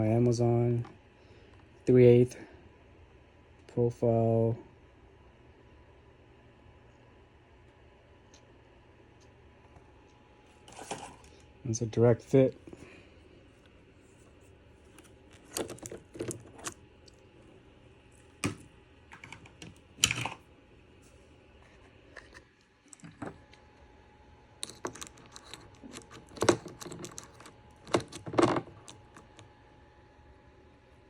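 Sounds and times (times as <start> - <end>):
chainsaw parts clicking and clattering: 15.3 - 16.8, 24.6 - 29.3.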